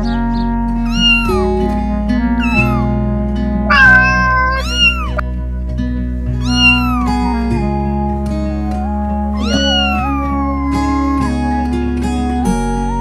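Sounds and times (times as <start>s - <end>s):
cat meowing: 0.9s - 1.5s, 2.4s - 2.9s, 3.7s - 5.2s, 6.4s - 7.2s, 9.4s - 11.2s.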